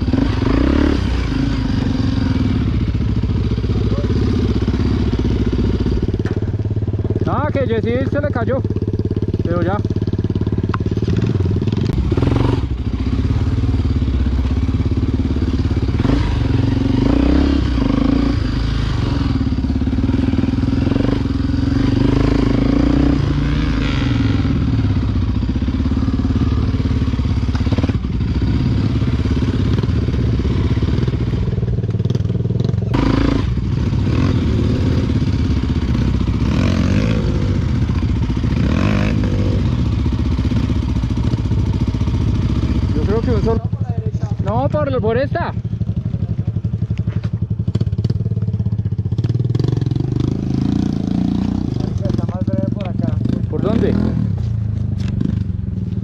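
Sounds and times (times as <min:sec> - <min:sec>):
motorcycle engine running: 0:00.0 - 0:56.0
engine clatter: 0:24.1 - 0:56.0.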